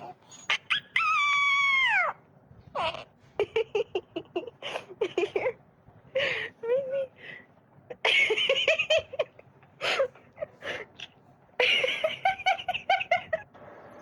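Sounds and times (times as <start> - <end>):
laughter: 3.4 - 5.6, 7.9 - 10.9, 11.6 - 13.6.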